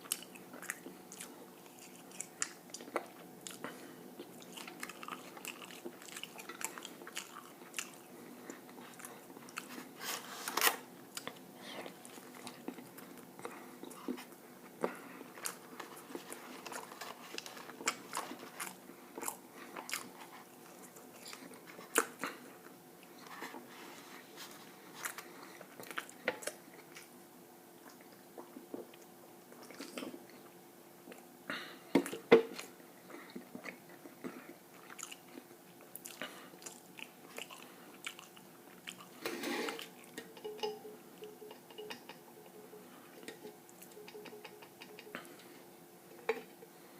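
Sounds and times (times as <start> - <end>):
chewing and mouth sounds: 0.0 - 10.0, 11.1 - 23.7, 24.9 - 27.2, 32.0 - 39.2, 39.8 - 45.5.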